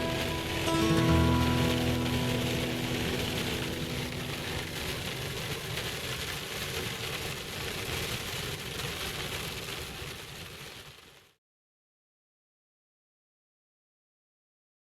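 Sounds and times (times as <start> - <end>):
tyre noise on wet road: 0.0 - 11.4.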